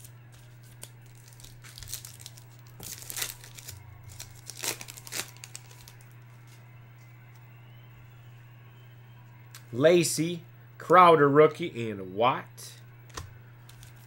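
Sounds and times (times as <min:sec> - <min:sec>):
wrapper crinkling and tearing: 0:00.0 - 0:06.2
low steady hum: 0:00.0 - 0:14.0.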